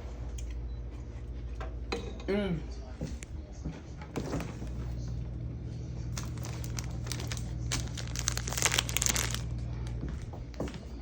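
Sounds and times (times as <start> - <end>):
steady low hum: 0.0 - 11.0
plastic packaging crinkling: 6.1 - 9.6.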